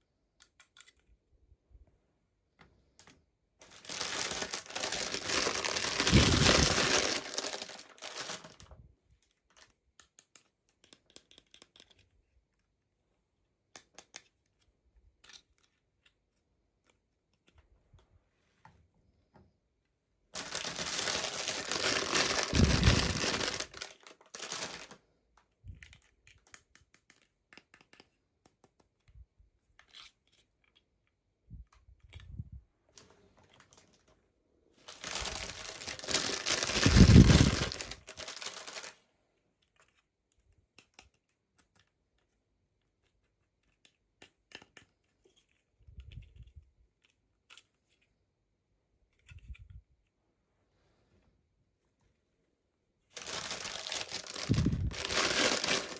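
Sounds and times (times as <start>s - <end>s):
packaging crinkled and torn: 3.6s - 8.7s, 20.4s - 25.0s, 34.9s - 39.0s, 53.2s - 55.9s
clicks and taps of handling: 9.1s - 12.8s, 13.6s - 19.6s, 25.3s - 32.5s, 39.6s - 48.1s.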